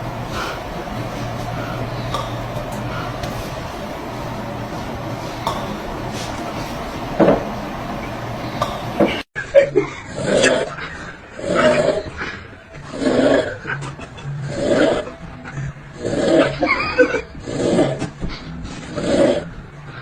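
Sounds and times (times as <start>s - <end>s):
rasping snoring: 0.0s - 7.6s, 16.0s - 16.6s, 17.4s - 19.6s
steady background hum: 0.0s - 20.0s.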